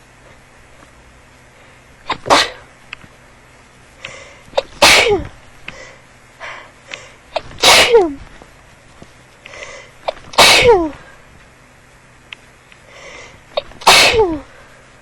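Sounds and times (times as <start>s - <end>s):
person sneezing: 2.1s - 2.7s, 4.5s - 5.9s, 7.3s - 8.2s, 9.6s - 11.1s, 13.5s - 14.6s
person breathing: 4.0s - 4.5s, 5.7s - 7.3s, 9.4s - 10.0s, 12.8s - 13.4s
sharp intake of breath: 4.0s - 5.0s, 5.7s - 7.4s, 9.5s - 11.2s, 12.8s - 15.0s.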